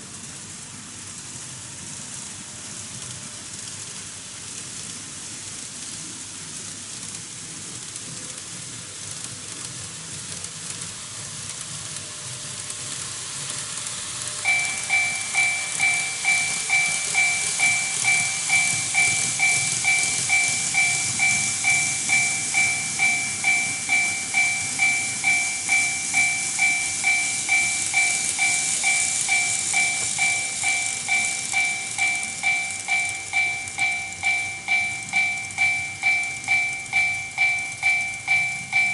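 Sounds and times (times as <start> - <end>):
model trains running on track: 0.0 - 38.9
level crossing warning bell: 14.4 - 38.9.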